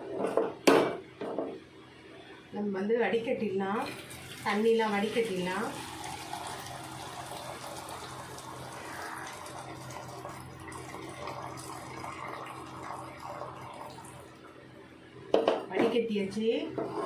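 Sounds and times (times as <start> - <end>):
water pouring through a strainer: 3.9 - 14.4.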